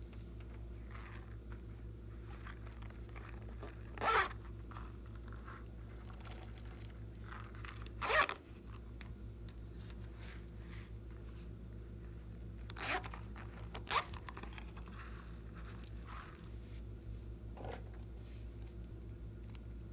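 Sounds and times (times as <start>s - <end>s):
short rasping rips: 7.9s - 8.4s, 12.7s - 16.4s.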